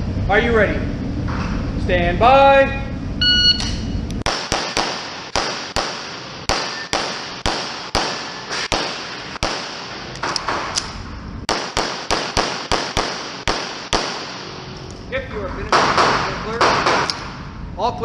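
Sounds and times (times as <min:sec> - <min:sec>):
pistol shots: 0:04.2 - 0:14.8, 0:15.7 - 0:17.4.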